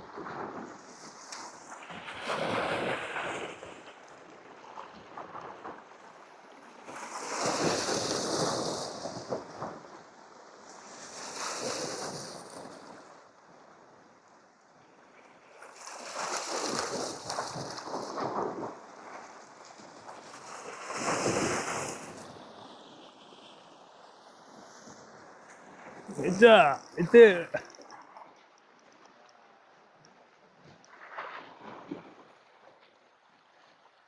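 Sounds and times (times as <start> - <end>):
sea waves washing over rocks: 0.2 - 13.7, 15.5 - 27.7.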